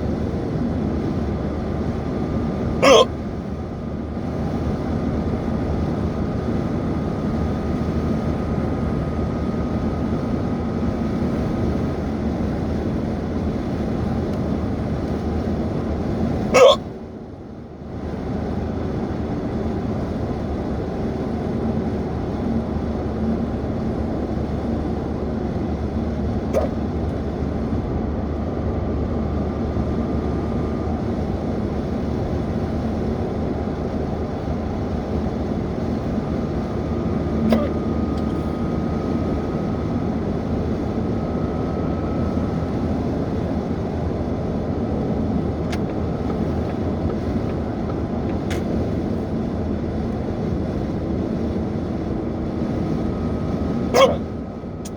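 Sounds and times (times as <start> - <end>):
low background rumble: 0.0 - 54.9
person hiccuping: 2.8 - 3.2, 16.6 - 16.8, 26.5 - 26.8, 37.4 - 37.8, 53.9 - 54.3.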